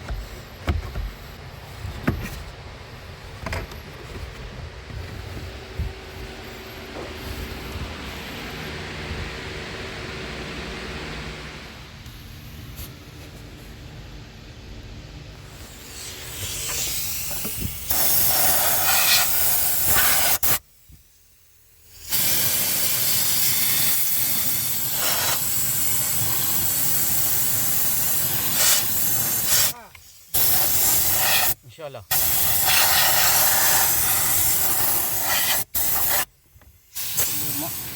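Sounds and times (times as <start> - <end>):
low hum: 0.0 - 15.9
loud rush of air: 4.0 - 13.2.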